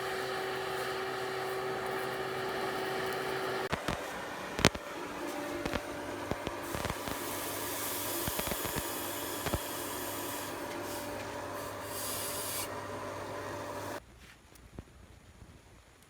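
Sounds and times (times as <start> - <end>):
grinder rasping on steel: 0.0 - 14.0.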